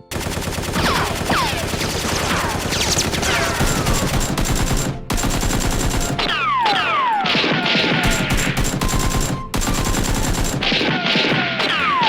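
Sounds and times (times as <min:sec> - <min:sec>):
rapid automatic gunfire: 0:00.0 - 0:12.0
falling whistles: 0:06.2 - 0:12.0.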